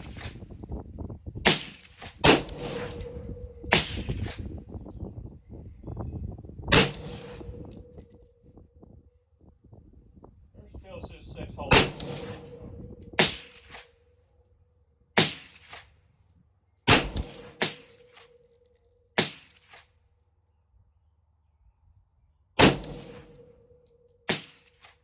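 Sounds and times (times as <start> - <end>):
rifle shots with echo: 1.4 - 4.5, 6.7 - 8.2, 11.6 - 13.9, 15.2 - 15.8, 16.9 - 18.3, 19.2 - 19.7, 22.6 - 23.7, 24.3 - 24.9.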